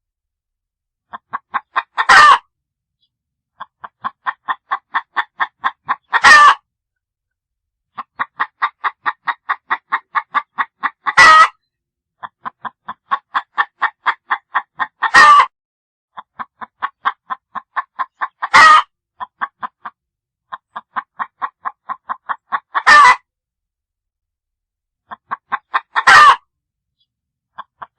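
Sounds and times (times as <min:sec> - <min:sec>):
hen clucking: 0:01.1 - 0:02.5, 0:03.6 - 0:06.6, 0:07.9 - 0:15.5, 0:16.1 - 0:23.3, 0:25.1 - 0:26.4, 0:27.6 - 0:27.9.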